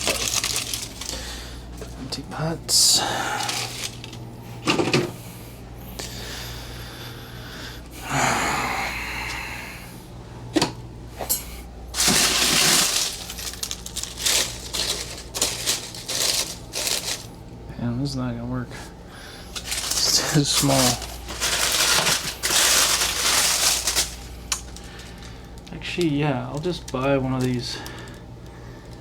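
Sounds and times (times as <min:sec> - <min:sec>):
scraping and rustling: 0:00.0 - 0:02.0, 0:03.4 - 0:04.2, 0:12.0 - 0:17.4, 0:19.5 - 0:25.3.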